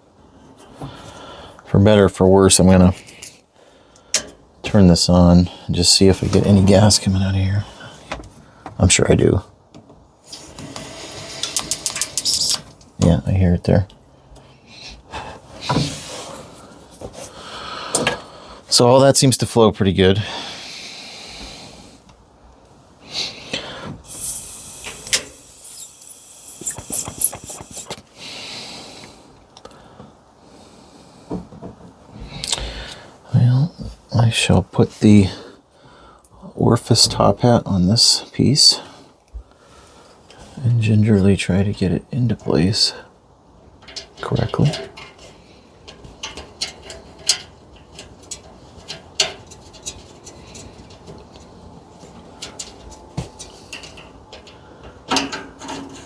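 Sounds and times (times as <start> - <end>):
gas hissing in spurts: 10.3 - 12.6, 24.0 - 29.1
small metal parts clicking: 11.4 - 12.7.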